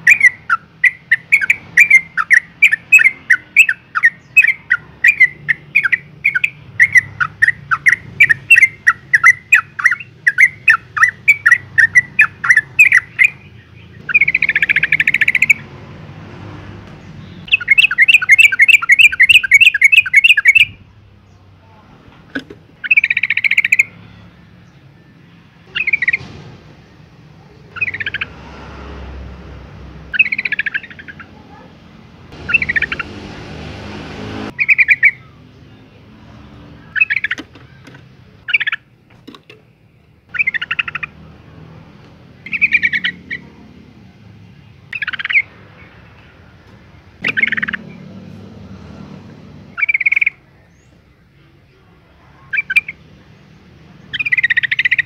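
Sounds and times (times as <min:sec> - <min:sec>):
bird chattering calls: 0:00.0 - 0:15.7, 0:17.2 - 0:20.8, 0:22.8 - 0:24.0, 0:25.7 - 0:26.3, 0:27.5 - 0:28.4, 0:30.1 - 0:31.7, 0:32.3 - 0:33.3, 0:34.5 - 0:35.4, 0:36.8 - 0:38.9, 0:40.3 - 0:41.3, 0:42.4 - 0:43.6, 0:44.9 - 0:45.6, 0:47.2 - 0:48.0, 0:49.8 - 0:50.9, 0:52.4 - 0:53.1, 0:54.0 - 0:55.0.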